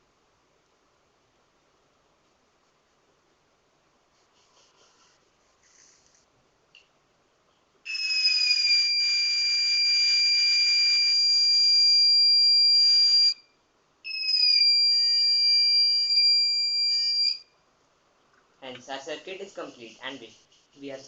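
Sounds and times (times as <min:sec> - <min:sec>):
high-pitched electronic alarm buzzer: 0:07.9 - 0:13.5, 0:14.1 - 0:17.5.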